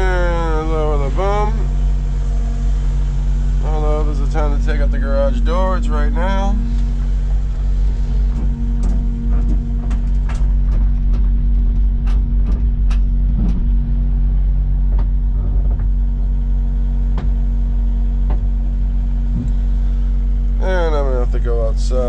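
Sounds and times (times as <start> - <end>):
excavator diesel engine running: 0.0 - 22.0
sharp machine clicks and knocks: 8.3 - 13.7.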